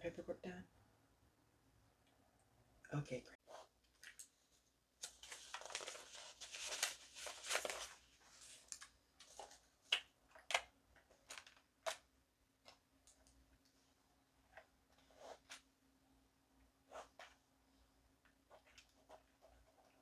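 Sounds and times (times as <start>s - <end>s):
paper rustling: 4.0s - 12.0s.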